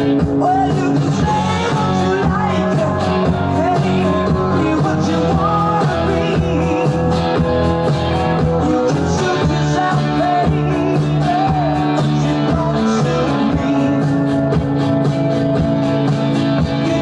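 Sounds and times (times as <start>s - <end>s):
person singing: 0.0s - 14.8s, 16.3s - 17.0s
guitar: 0.0s - 17.0s
steady drum beat: 0.0s - 17.0s.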